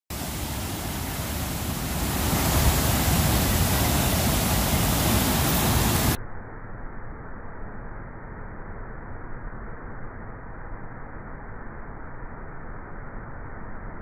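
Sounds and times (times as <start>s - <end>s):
waterfall rushing: 0.1s - 6.2s.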